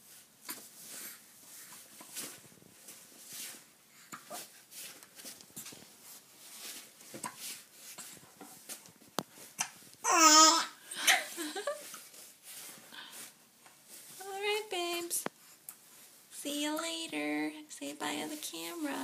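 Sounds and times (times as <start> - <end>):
baby babbling and gurgling: 10.0 - 10.8
baby cooing: 10.0 - 10.8.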